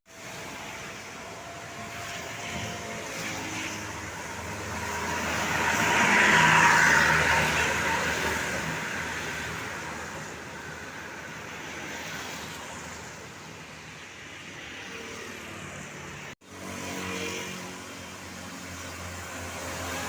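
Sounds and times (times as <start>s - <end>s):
steady road noise: 0.1s - 20.0s
vehicle passing: 2.5s - 12.4s.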